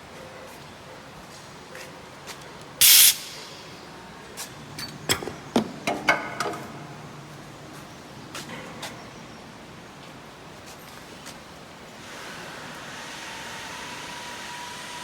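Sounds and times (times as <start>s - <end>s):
compressed air hiss: 2.8s - 3.8s.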